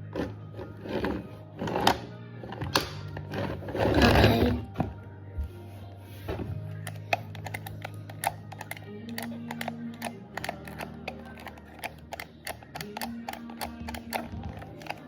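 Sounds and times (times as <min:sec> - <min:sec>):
soft background music: 0:00.0 - 0:15.0
plastic toy pieces clicking: 0:06.8 - 0:15.0.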